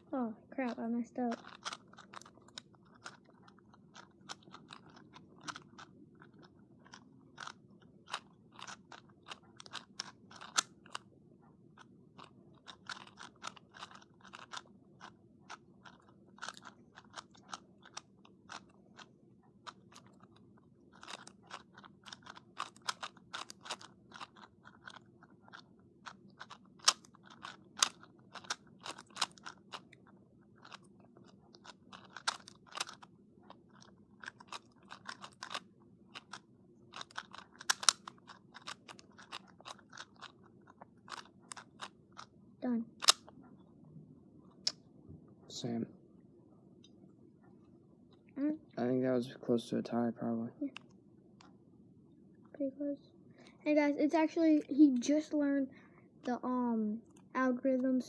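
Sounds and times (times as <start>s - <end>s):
speed cube clicking as turned: 0.6s - 11.1s, 11.7s - 42.3s, 43.0s - 43.3s.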